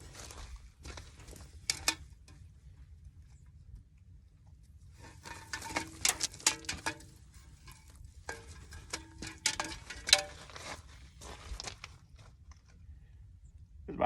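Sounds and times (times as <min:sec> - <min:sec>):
handling clatter of clicks: 0:01.3 - 0:02.0, 0:05.0 - 0:10.6.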